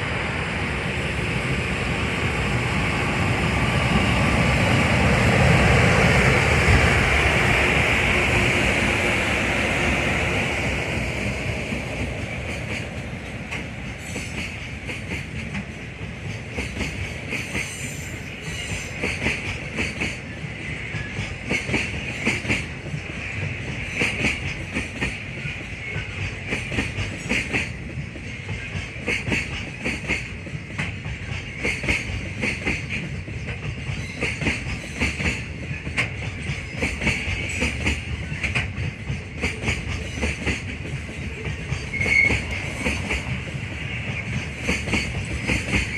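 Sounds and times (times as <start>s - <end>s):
train wheels clattering over rail joints: 10.6s - 45.9s
high wheel squeal: 41.6s - 42.9s.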